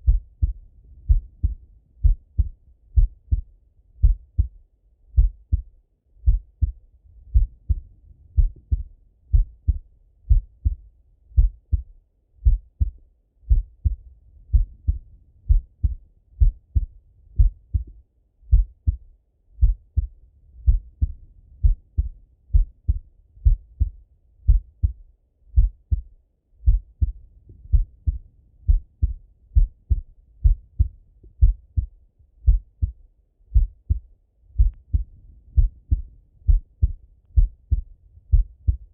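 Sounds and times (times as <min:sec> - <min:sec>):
heartbeat thuds: 0:00.0 - 0:04.6, 0:05.2 - 0:38.9.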